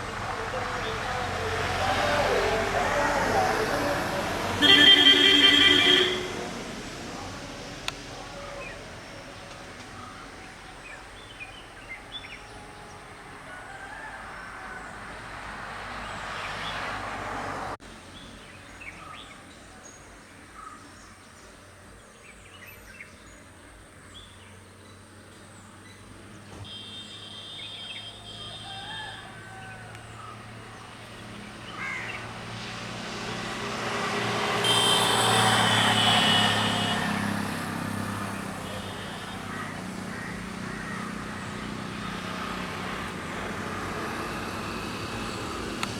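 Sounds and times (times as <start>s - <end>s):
road vehicle passing: 0.0s - 19.2s, 27.8s - 45.9s
birds chirping: 18.1s - 32.4s.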